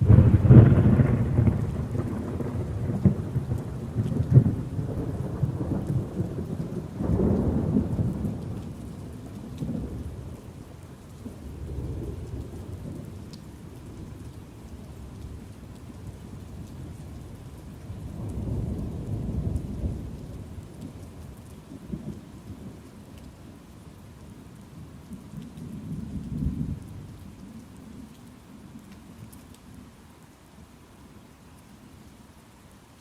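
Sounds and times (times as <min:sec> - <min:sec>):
thunder rumbling: 0:00.0 - 0:10.2, 0:17.9 - 0:21.0
steady rain: 0:00.0 - 0:33.0.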